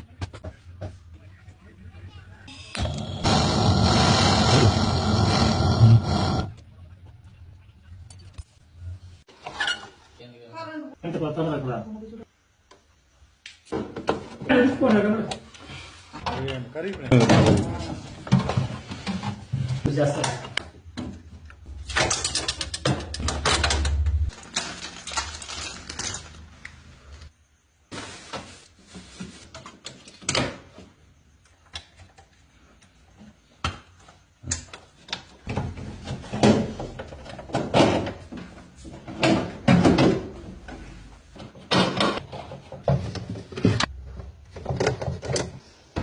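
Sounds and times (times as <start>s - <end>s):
hard parts knocking and clattering: 16.2s - 24.7s, 41.4s - 45.6s.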